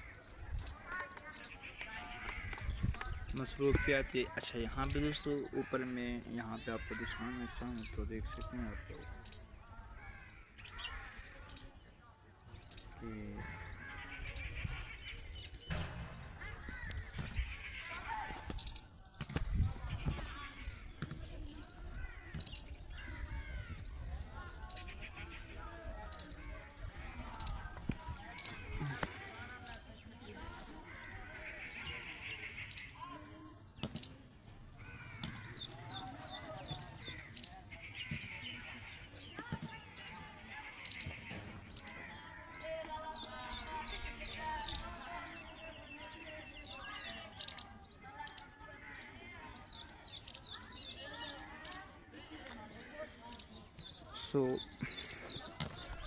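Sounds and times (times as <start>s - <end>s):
small birds chirping: 0.0s - 56.0s
high short bird chirps: 46.9s - 49.2s.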